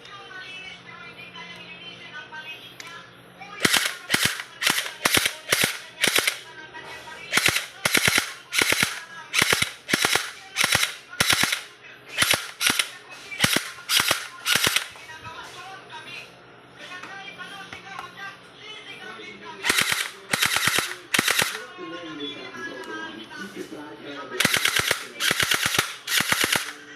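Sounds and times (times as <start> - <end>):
gel blaster pistol firing: 3.6 - 6.4, 7.3 - 14.9, 19.6 - 21.6, 24.4 - 26.8.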